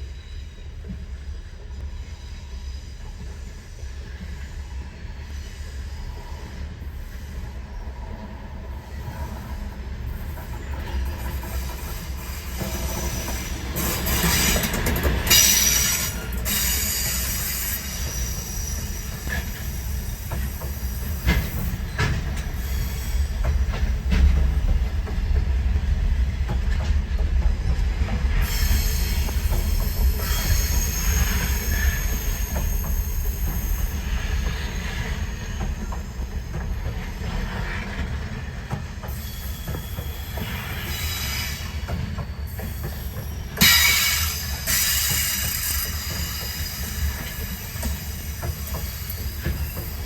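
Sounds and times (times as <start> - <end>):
freight train wheels rumbling: 0.0 - 50.0
high-pitched wheel squeal: 28.5 - 34.7.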